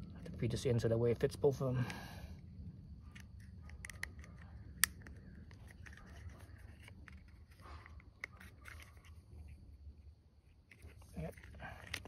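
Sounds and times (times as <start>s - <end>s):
low steady hum: 0.0s - 12.0s
motorcycle parts clicking and rubbing: 3.0s - 9.6s, 10.4s - 12.0s.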